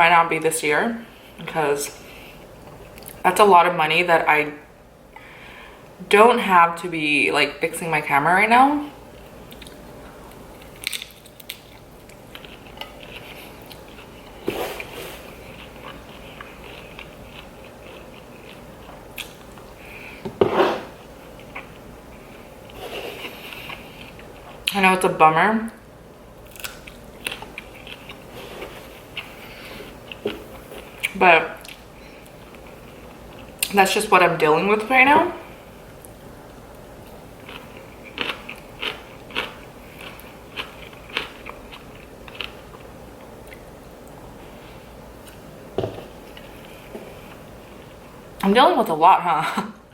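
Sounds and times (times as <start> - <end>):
person chewing food: 9.2 - 24.7, 26.4 - 33.7, 35.4 - 48.2.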